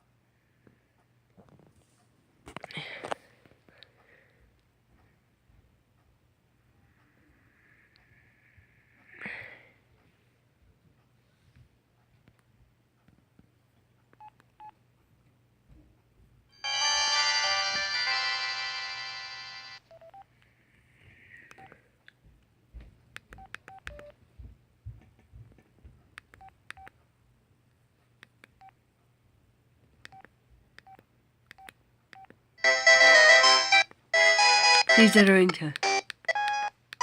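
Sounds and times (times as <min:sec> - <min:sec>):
electronic phone jingle: 0:16.6 - 0:19.8, 0:32.6 - 0:36.7
phone keypad beeps: 0:34.2 - 0:37.0.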